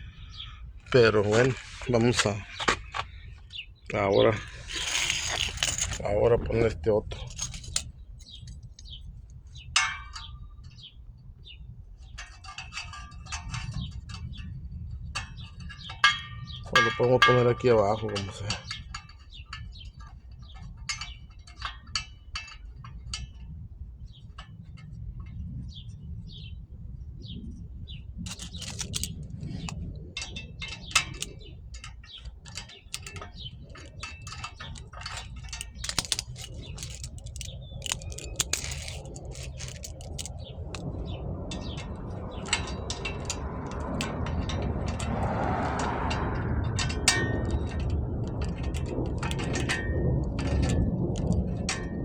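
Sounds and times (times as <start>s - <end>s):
steady low rumble: 0.0s - 12.0s, 23.7s - 52.0s
metal tool clinking: 4.3s - 8.4s, 16.0s - 18.8s, 28.3s - 29.2s, 30.8s - 40.8s.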